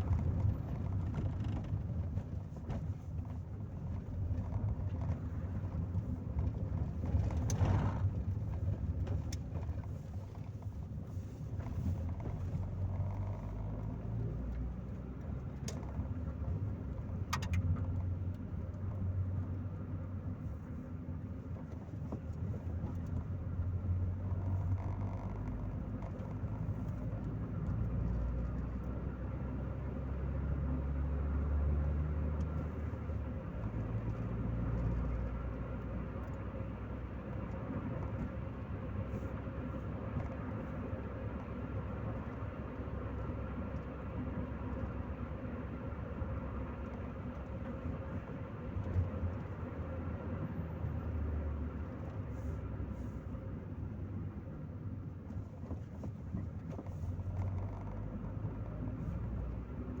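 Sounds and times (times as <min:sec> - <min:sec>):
car engine running: 0:00.0 - 1:00.0
road and tyre noise: 0:00.0 - 1:00.0.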